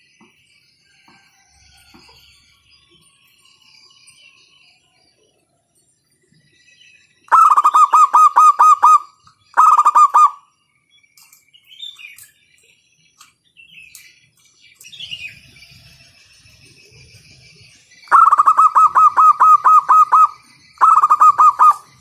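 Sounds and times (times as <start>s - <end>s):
small birds chirping: 0.0s - 22.0s
dove cooing: 7.3s - 10.4s, 18.1s - 22.0s.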